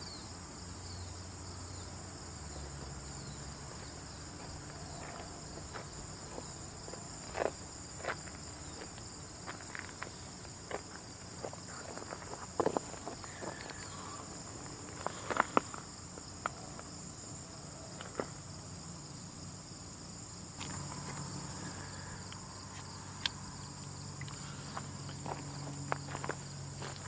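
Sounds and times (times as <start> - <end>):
high insect-like buzz: 16.3 - 27.0.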